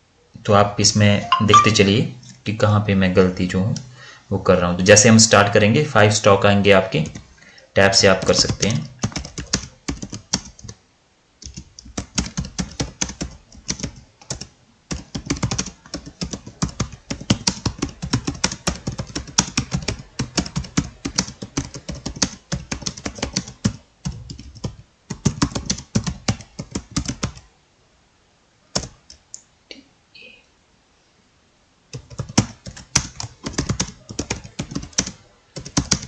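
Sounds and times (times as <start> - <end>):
typing on computer keyboard: 8.1 - 10.8, 11.4 - 27.4, 28.8 - 29.2, 31.9 - 36.0.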